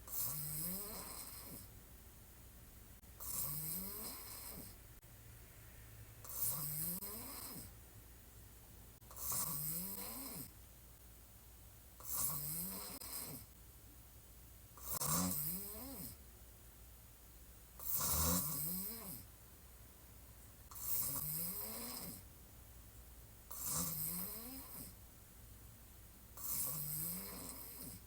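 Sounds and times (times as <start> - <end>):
quiet breathing: 0.0 - 1.8, 3.0 - 7.9, 26.0 - 28.0
woman snoring: 0.1 - 1.7, 3.2 - 4.8, 6.2 - 7.7, 9.1 - 10.5, 12.0 - 13.5, 14.8 - 16.2, 17.8 - 19.3, 20.7 - 22.2, 23.5 - 25.0, 26.4 - 28.0.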